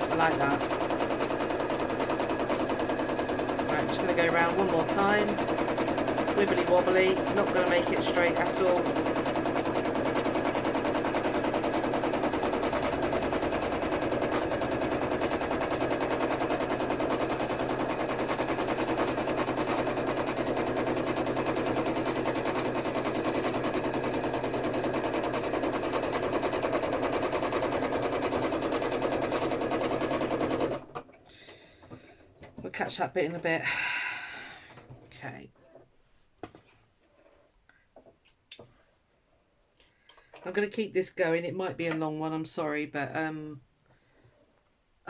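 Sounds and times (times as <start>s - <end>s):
sewing machine stitching fast: 0.0s - 31.5s.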